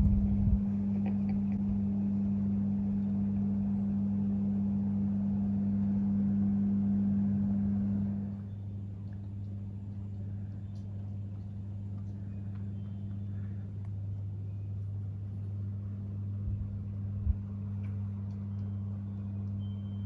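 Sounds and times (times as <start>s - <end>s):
soft low thumps: 0.0s - 0.8s, 16.4s - 17.5s
low electrical hum of motor: 0.0s - 20.0s.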